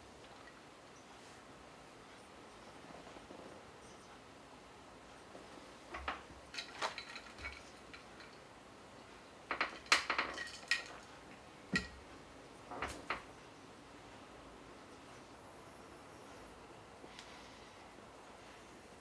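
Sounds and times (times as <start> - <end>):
dishes and cutlery clinking: 6.0 - 8.4, 9.5 - 11.1, 11.7 - 12.0.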